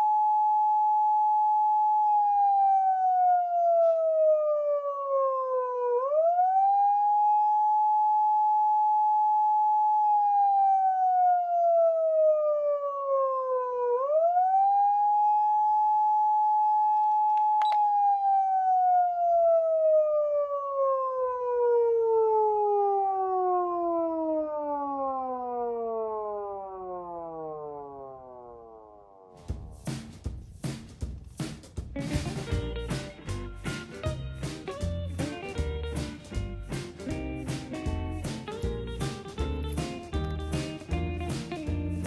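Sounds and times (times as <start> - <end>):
rising and falling siren tone: 0.0 - 29.4
short click: 17.3 - 17.9.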